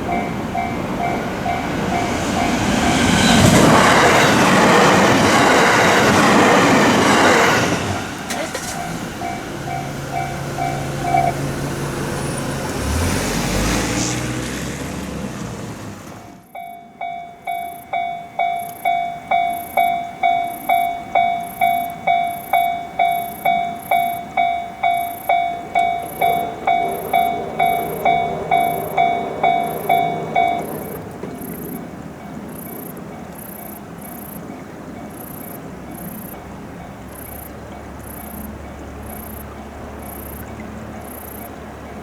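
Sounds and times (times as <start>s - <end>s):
level crossing bell clanging: 0.0s - 5.8s, 8.3s - 12.0s, 16.4s - 40.5s
train wheels rumbling on rails: 0.0s - 42.0s.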